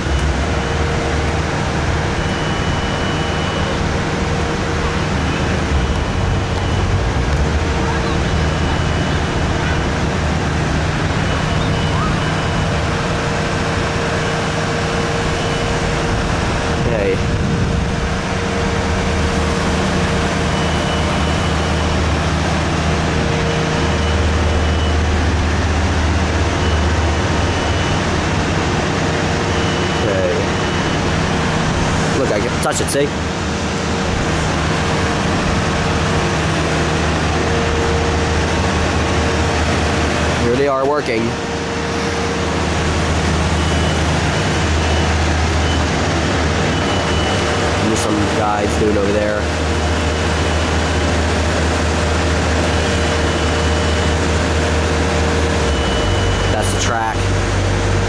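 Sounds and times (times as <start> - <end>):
low rumble: 0.0 - 29.3
low engine drone: 0.0 - 58.0
rushing noise: 0.0 - 58.0.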